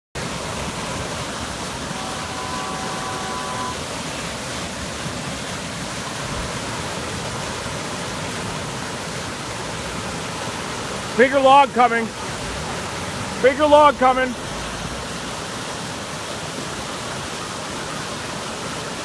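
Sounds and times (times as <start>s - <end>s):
muddy creek water rushing: 0.1s - 19.0s.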